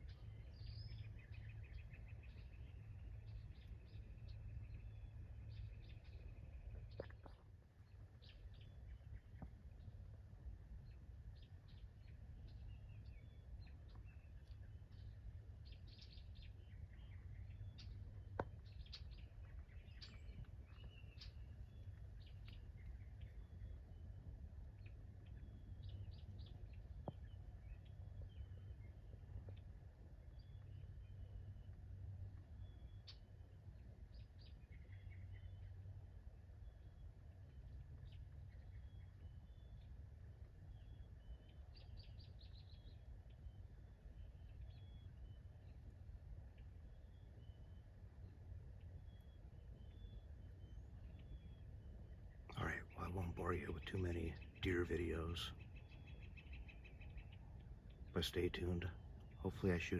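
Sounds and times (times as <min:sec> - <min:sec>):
low rumble of wind: 0:00.0 - 0:59.9
songbirds chirping and trilling: 0:00.0 - 0:59.9.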